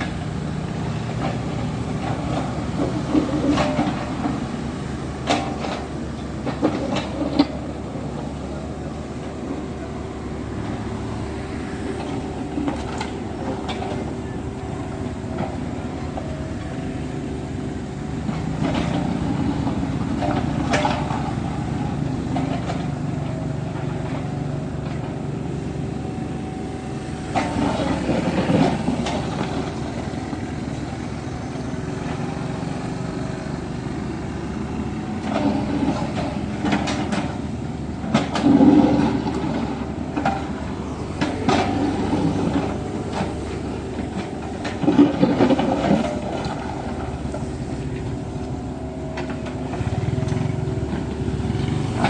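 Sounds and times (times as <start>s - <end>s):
excavator diesel engine running: 0.0s - 52.0s
bucket clanking and scraping ground: 5.2s - 7.8s, 18.2s - 21.6s, 27.3s - 30.2s, 35.2s - 52.0s.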